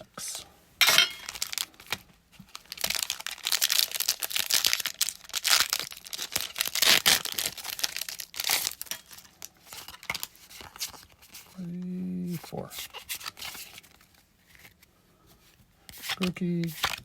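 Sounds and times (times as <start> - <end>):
foil wrappers crinkling and tearing: 0.9 - 11.8, 15.9 - 17.0.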